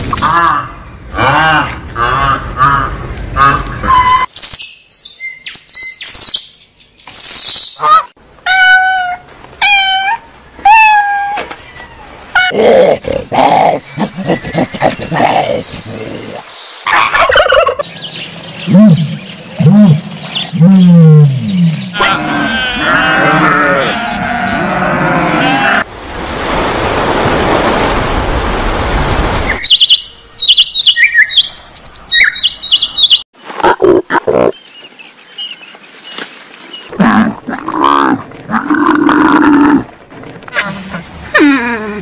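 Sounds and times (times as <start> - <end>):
high bird chirps: 4.1 - 7.8, 29.5 - 33.2.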